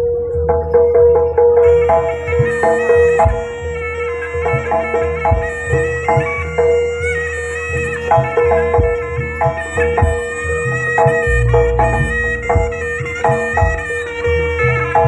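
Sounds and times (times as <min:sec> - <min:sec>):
low drum beats: 0:00.0 - 0:15.0
reedy shawm melody: 0:00.0 - 0:15.0
steady held tone: 0:00.0 - 0:15.0
struck metal gamelan notes: 0:00.0 - 0:15.0.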